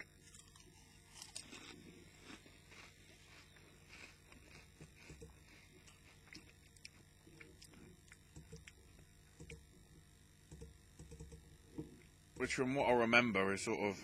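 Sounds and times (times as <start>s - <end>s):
crisp being chewed: 0.0s - 9.6s.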